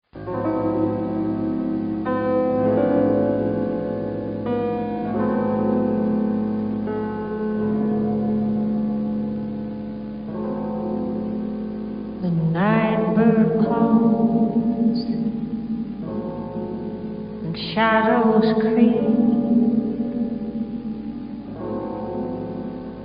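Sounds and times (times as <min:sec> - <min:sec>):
white noise: 0:00.1 - 0:23.0
sustained keyboard chords: 0:00.2 - 0:23.0
person singing: 0:12.2 - 0:15.5, 0:17.4 - 0:20.0.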